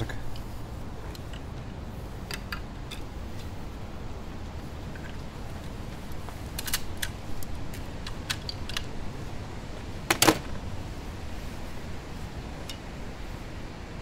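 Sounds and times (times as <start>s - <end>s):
wind rumbling on microphone: 0.0s - 14.0s
crossbow handling clicks: 1.1s - 1.6s, 2.2s - 3.6s, 4.9s - 9.0s, 12.6s - 12.9s.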